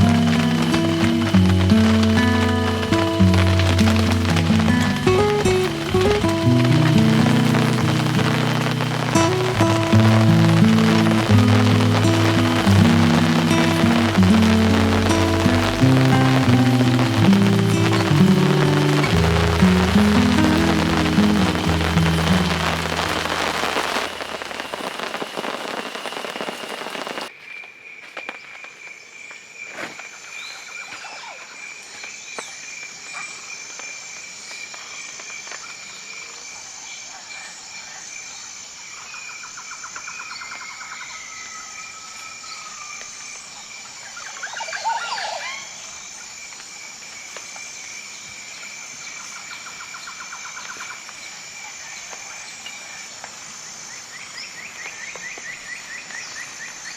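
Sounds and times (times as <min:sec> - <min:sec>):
heavy rain falling: 0:00.0 - 0:27.3
high insect drone: 0:00.0 - 0:27.3
bird-like call: 0:44.3 - 0:46.0.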